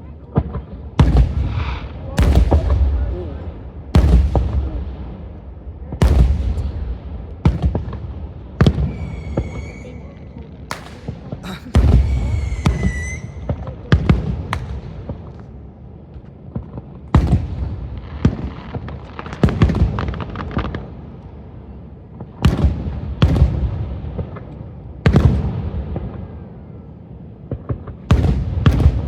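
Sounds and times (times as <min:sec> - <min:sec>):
fireworks bangs with rumbling echo: 0:00.0 - 0:29.0
high firework whistle: 0:08.7 - 0:10.9, 0:11.8 - 0:13.7.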